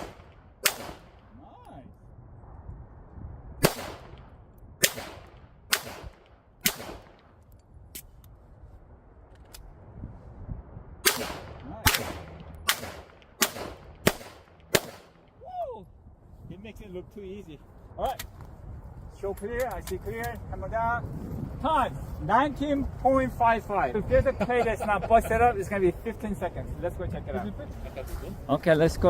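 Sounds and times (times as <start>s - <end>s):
pistol shots: 0.0s - 1.3s, 3.6s - 7.3s, 11.0s - 15.2s.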